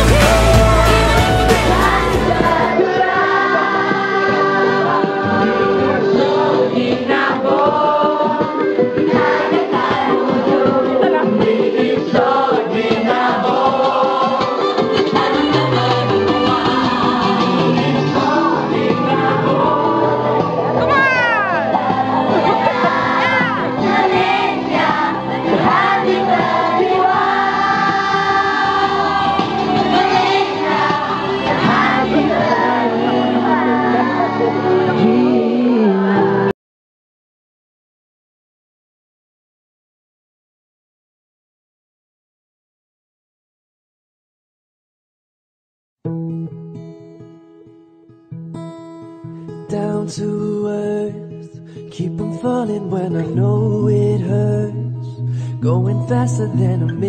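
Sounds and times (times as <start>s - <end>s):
steady beat: 0.0s - 2.7s
voices singing held notes: 0.0s - 36.5s.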